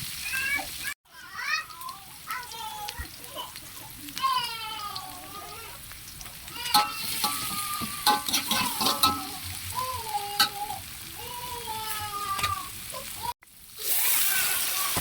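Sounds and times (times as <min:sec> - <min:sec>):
beans sizzling in a pan: 0:00.0 - 0:15.0
spatula clacking and scraping pan: 0:06.5 - 0:09.6, 0:10.3 - 0:10.8.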